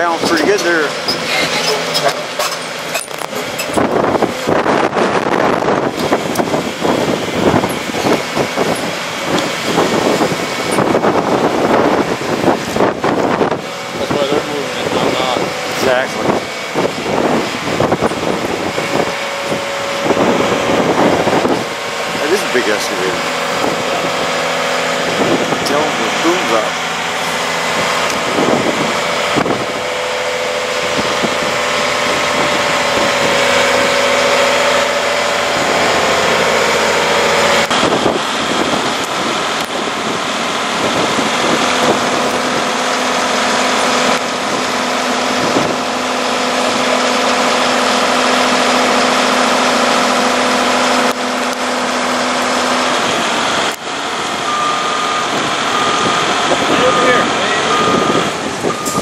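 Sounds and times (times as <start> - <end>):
excavator diesel engine running: 0.0 - 59.0.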